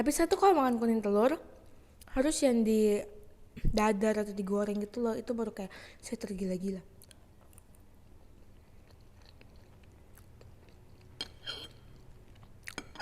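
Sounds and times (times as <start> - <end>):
close-up chewing with wet mouth sounds: 7.0 - 13.0.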